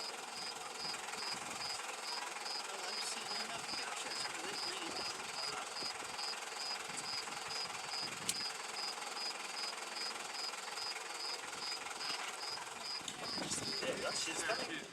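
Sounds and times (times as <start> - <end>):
high-pitched insect chirp: 5.4 - 11.8, 12.4 - 13.8.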